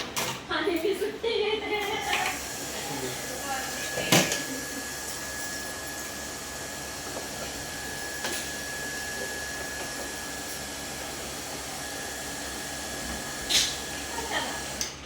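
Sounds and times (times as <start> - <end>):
mechanical whirring hum: 0.0 - 15.0.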